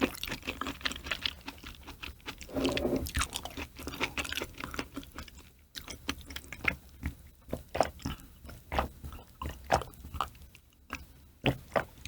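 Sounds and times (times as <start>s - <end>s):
chewing with wet mouth clicks: 3.3s - 12.0s.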